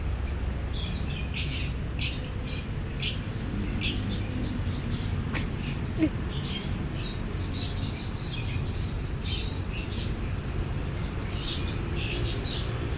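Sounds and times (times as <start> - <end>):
steady low hum: 0.0 - 8.0
small birds chirping: 0.1 - 12.9.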